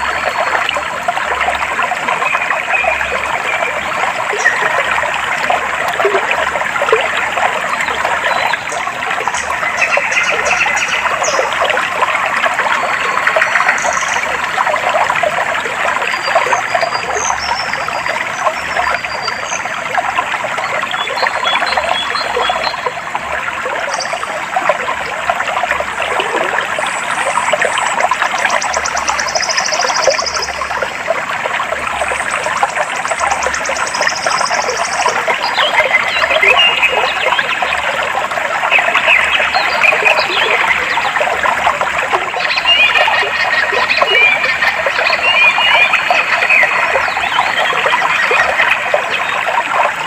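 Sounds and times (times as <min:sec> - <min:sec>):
stream trickling and babbling: 0:00.0 - 0:50.0.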